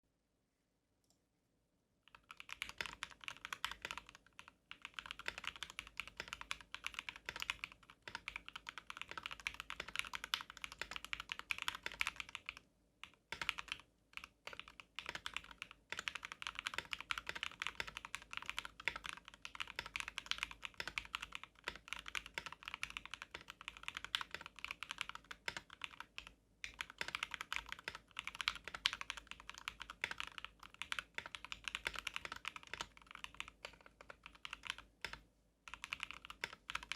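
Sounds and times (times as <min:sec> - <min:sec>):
mechanical keyboard typing: 0:02.1 - 0:36.9.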